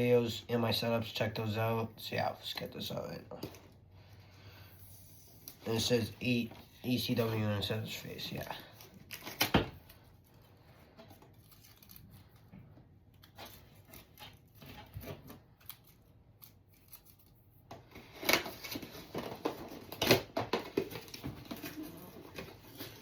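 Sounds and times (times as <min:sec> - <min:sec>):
cardboard and plastic rustling: 0:05.5 - 0:23.0.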